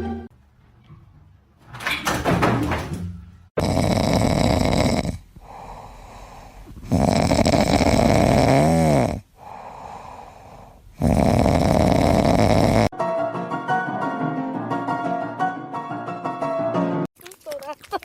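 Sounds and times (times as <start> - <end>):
music: 0.0 - 0.3, 12.9 - 17.1
pet snoring loudly: 3.6 - 12.9.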